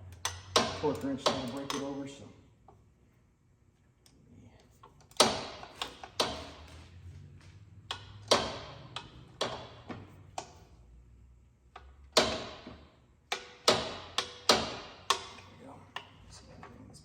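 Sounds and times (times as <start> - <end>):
tools clanking against metal: 0.1 - 2.1.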